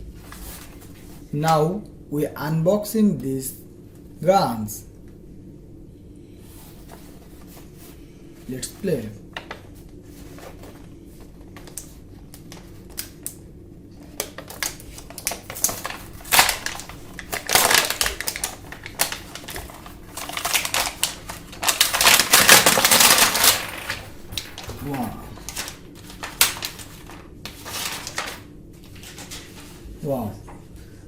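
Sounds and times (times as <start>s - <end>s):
packaging crinkling and tearing: 14.1s - 29.6s.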